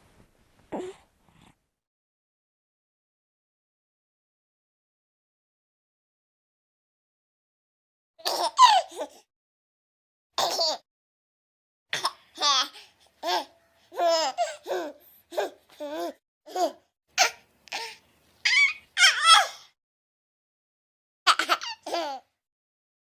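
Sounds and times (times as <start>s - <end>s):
baby laughing and giggling: 8.2s - 9.3s, 10.4s - 10.8s, 12.0s - 19.7s, 21.3s - 22.4s.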